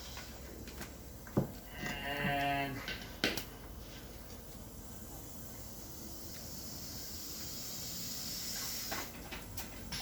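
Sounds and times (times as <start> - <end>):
compressed air hissing: 3.7 - 9.6.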